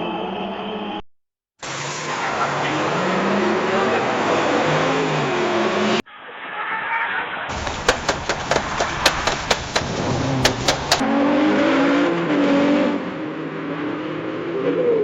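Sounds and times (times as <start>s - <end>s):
rushing noise: 7.5s - 11.0s.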